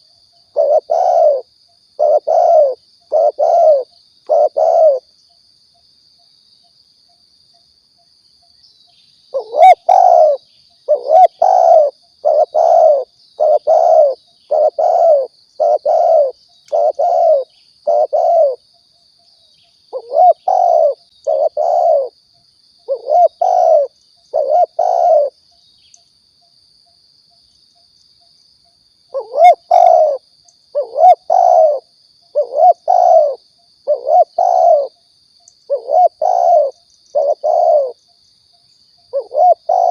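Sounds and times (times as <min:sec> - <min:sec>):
dove cooing: 0:00.0 - 0:05.1, 0:09.3 - 0:18.6, 0:19.9 - 0:22.2, 0:22.9 - 0:25.4, 0:29.1 - 0:35.0, 0:35.7 - 0:38.0, 0:39.1 - 0:39.9.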